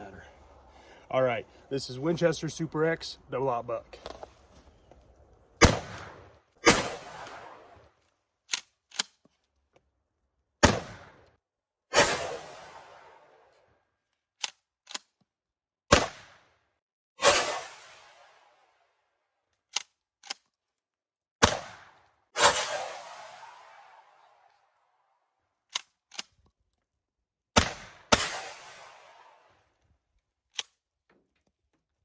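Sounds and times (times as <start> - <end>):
shotgun blasts: 5.6 - 7.8, 10.6 - 11.2, 11.9 - 13.4, 15.9 - 16.5, 17.2 - 18.6, 21.4 - 24.4, 27.6 - 29.5.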